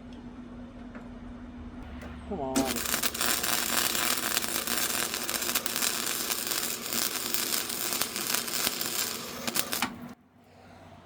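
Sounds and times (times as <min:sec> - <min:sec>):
welding arc crackling: 0:02.6 - 0:10.2.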